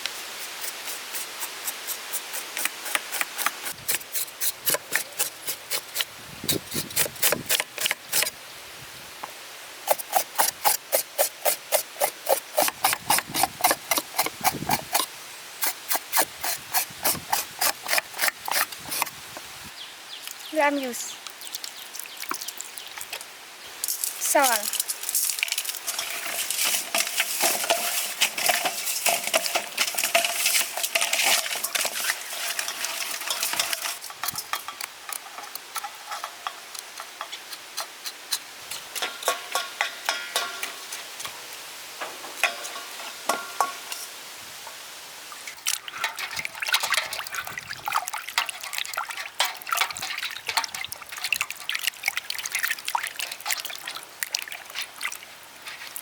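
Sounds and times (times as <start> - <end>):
hands scrubbing with salt: 0.1 - 8.3, 9.9 - 19.1, 23.8 - 34.5, 54.4 - 56.0
water splashing in a bowl: 21.2 - 23.3, 45.5 - 56.0.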